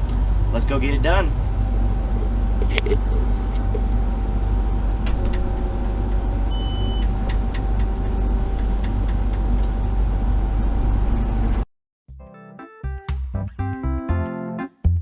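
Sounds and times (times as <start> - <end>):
combine harvester rumbling: 0.0 - 11.6.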